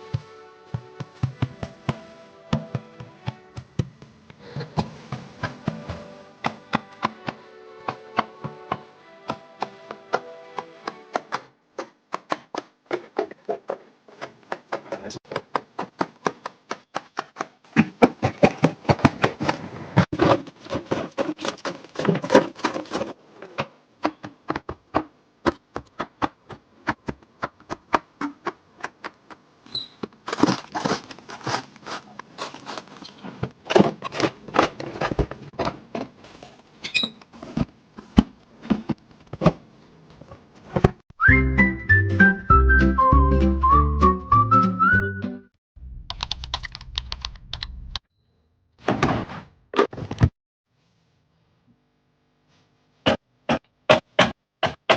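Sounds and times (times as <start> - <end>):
soft background music: 0.0 - 4.2, 4.8 - 11.5.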